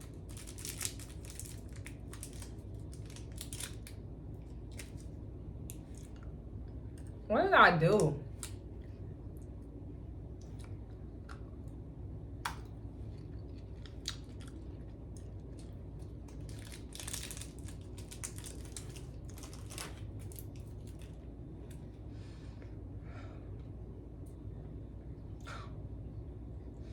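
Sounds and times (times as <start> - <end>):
crinkling rustle: 0.0 - 4.0, 13.7 - 21.3
person crunching hard candy: 0.0 - 4.0, 13.2 - 21.2.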